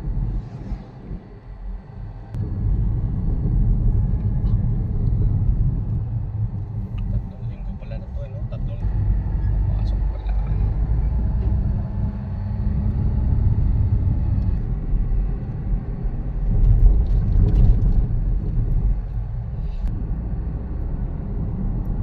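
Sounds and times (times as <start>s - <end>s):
car engine rumble: 0.0s - 22.0s
road noise: 0.0s - 22.0s.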